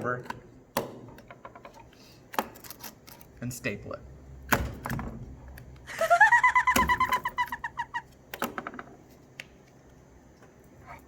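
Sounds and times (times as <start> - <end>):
high-pitched giggling laughter: 5.9 - 8.1.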